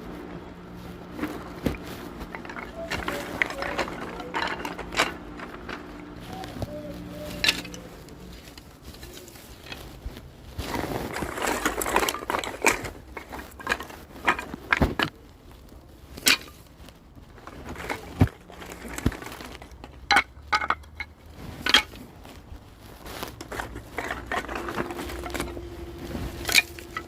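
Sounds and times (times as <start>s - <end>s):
wood and tools knocking and clattering: 0.0s - 10.0s, 10.7s - 15.2s, 17.3s - 22.1s, 23.3s - 27.0s
rustling and scraping: 0.0s - 27.0s.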